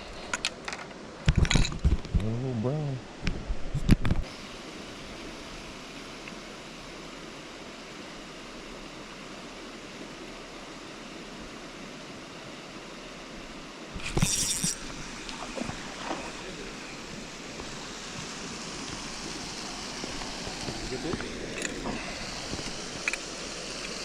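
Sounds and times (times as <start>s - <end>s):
river water flowing: 0.0s - 1.2s, 4.3s - 24.0s.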